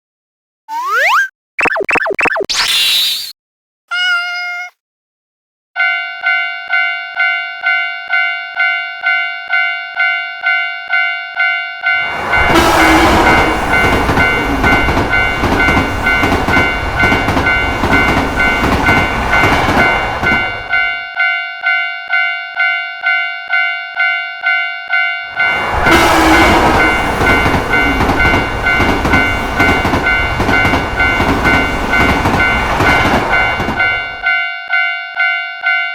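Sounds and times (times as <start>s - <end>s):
railroad crossing bell ringing: 5.8s - 35.9s
train passing: 11.8s - 21.0s, 25.3s - 34.4s
horn-like tone: 12.4s - 14.5s, 25.5s - 27.1s.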